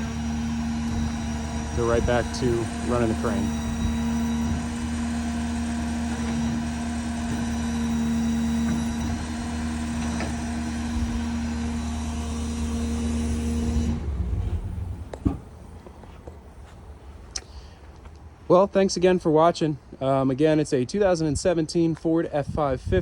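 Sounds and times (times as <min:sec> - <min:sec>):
hydraulic whine: 0:00.0 - 0:17.7
diesel engine running: 0:00.0 - 0:18.3.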